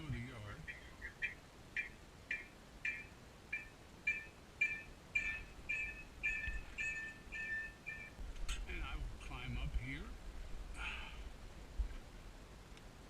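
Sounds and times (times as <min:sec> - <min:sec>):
bird chirping: 0:00.0 - 0:09.0.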